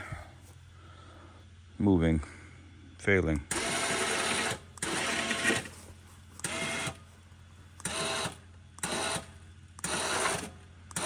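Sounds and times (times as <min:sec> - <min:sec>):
electric winch motor buzzing: 0:03.5 - 0:07.1, 0:07.8 - 0:11.0.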